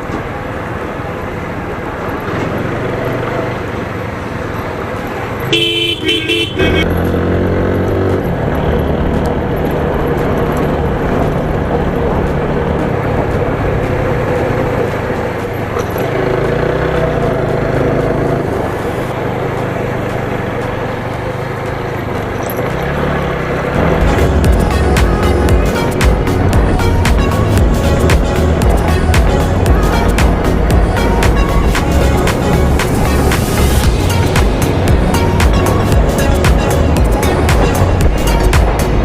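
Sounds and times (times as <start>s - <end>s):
vehicle engine hum: 0.0s - 39.0s
vehicle horn: 5.4s - 7.1s.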